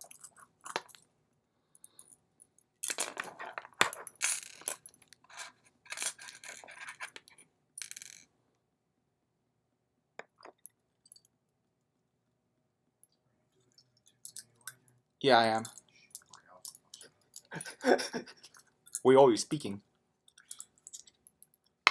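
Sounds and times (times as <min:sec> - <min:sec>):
padlock parts clicking and scraping: 0:00.0 - 0:01.1, 0:01.8 - 0:08.2, 0:13.7 - 0:14.9, 0:15.6 - 0:19.1, 0:20.3 - 0:21.9.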